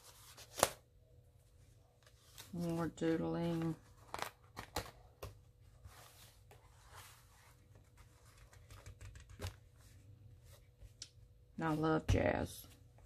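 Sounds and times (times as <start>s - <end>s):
paper pages rustling and tapping: 3.4s - 9.9s.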